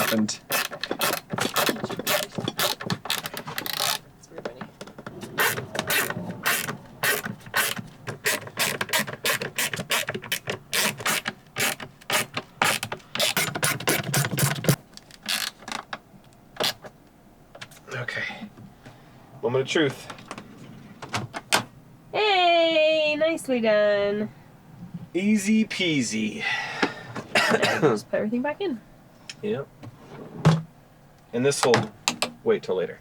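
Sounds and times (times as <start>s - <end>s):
screwdriver ratcheting clicks: 0.0s - 4.0s, 7.1s - 15.6s.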